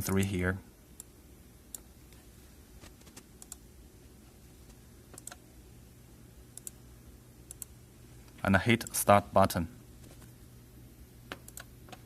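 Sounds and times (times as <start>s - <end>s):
low steady hum: 0.0s - 12.0s
computer keyboard clicks: 5.1s - 5.4s.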